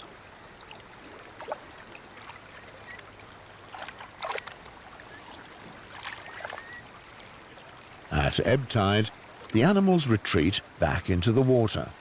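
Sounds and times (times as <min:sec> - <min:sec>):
shallow water trickling: 0:00.0 - 0:10.9
sharp splashes: 0:01.0 - 0:03.0, 0:03.6 - 0:06.8.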